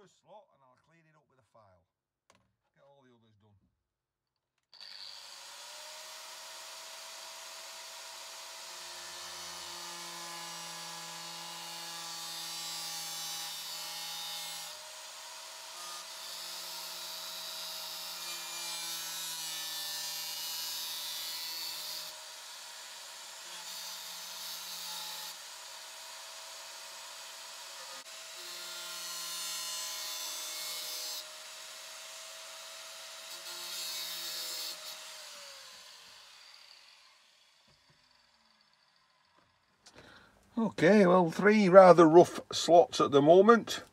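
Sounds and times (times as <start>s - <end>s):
angle grinder cutting metal: 4.8s - 39.7s.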